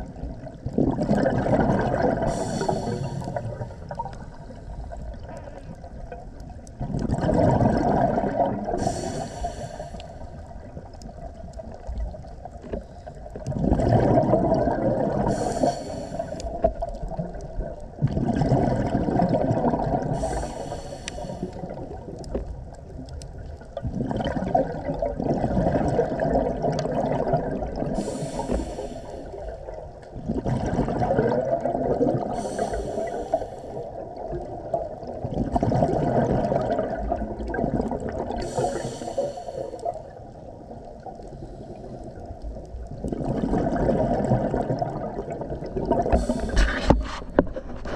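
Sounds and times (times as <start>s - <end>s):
bubbling exhaled air: 0.0s - 6.1s, 6.8s - 22.5s, 23.4s - 40.4s, 41.0s - 47.9s
diver inhaling through regulator: 2.2s - 5.0s, 8.6s - 10.4s, 15.1s - 16.6s, 20.0s - 22.0s, 27.9s - 29.6s, 32.2s - 34.0s, 38.4s - 40.2s, 46.1s - 47.9s.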